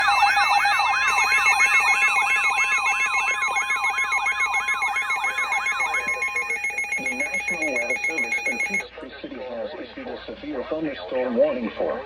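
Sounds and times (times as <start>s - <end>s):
steady alert tone: 0.0s - 8.8s
warbling electronic alarm: 0.0s - 8.8s.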